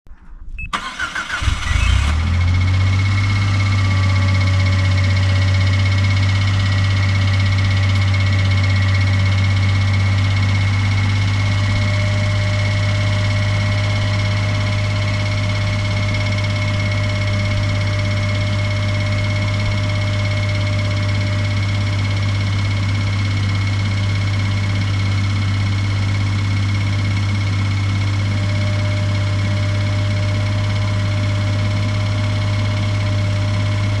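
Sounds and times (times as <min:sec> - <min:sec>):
engine starter cranking: 0:00.7 - 0:02.7
car engine idling: 0:00.7 - 0:34.0.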